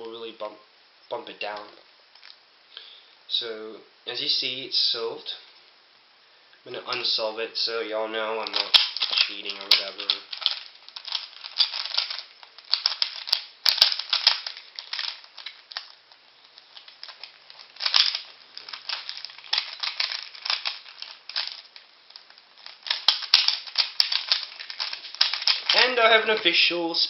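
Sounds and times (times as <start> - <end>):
puzzle cube clicking: 8.4 - 26.5.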